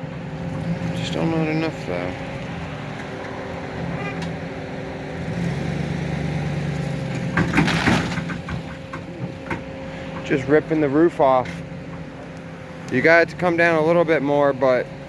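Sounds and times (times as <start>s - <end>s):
pickup truck engine under load: 0.0s - 15.0s
wood cracking and splintering: 7.2s - 8.7s.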